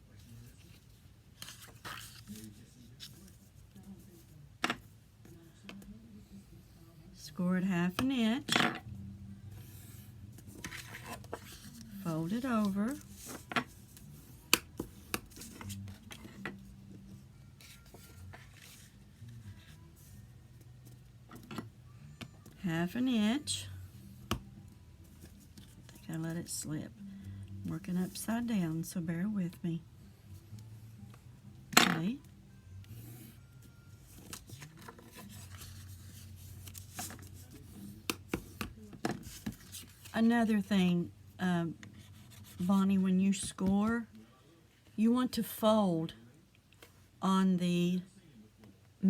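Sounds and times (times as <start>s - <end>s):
paper rustling: 0.2s - 4.0s, 10.4s - 14.1s, 17.6s - 20.1s, 34.0s - 40.1s.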